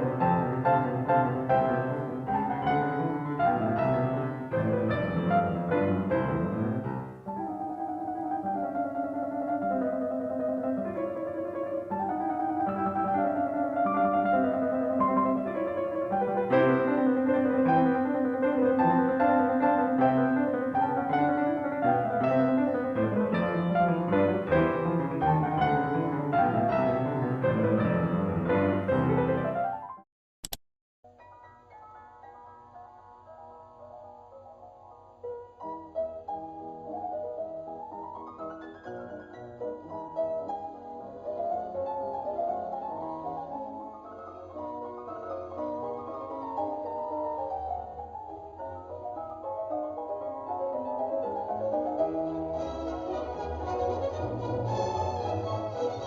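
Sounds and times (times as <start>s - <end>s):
gentle piano melody: 0.0s - 30.0s, 31.1s - 56.0s.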